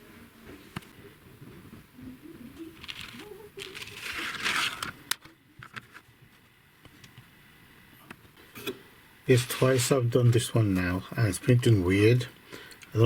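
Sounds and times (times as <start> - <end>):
rustling scraping noise: 2.8 - 5.0, 9.3 - 10.0.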